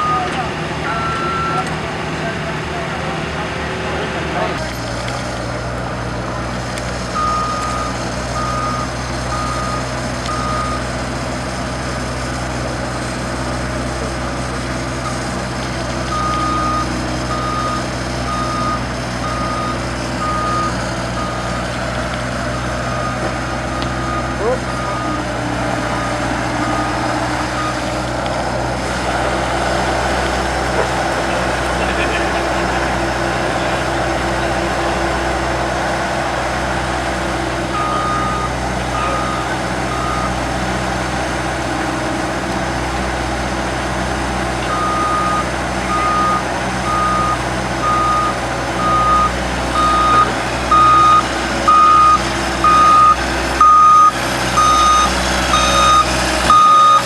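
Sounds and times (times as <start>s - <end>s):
backup alarm beeping: 0.0s - 1.7s, 37.7s - 40.4s, 44.6s - 57.0s
skid steer engine running: 0.0s - 57.0s.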